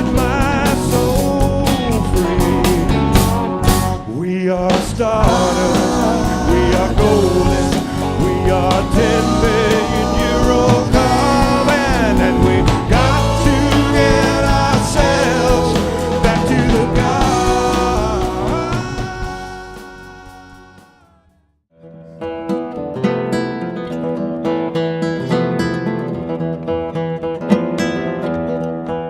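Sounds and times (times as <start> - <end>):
instrumental rock band music: 0.0 - 21.1.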